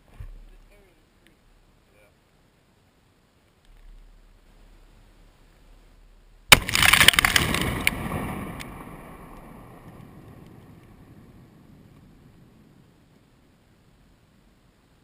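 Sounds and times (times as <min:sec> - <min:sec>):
rumble: 0:02.7 - 0:15.0
explosive blast: 0:06.5 - 0:12.8.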